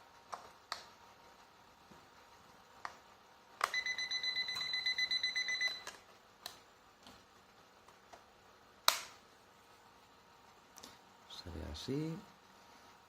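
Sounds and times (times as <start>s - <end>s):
alarm clock beeping: 3.7s - 5.8s.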